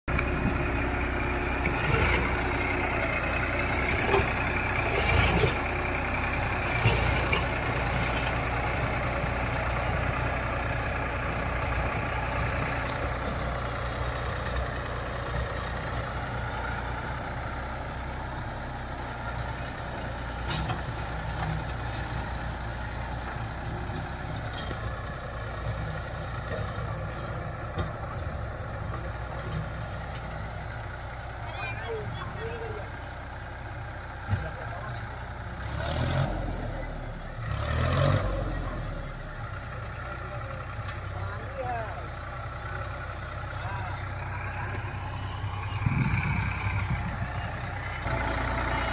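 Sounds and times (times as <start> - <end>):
tractor engine running: 0.0 - 48.9.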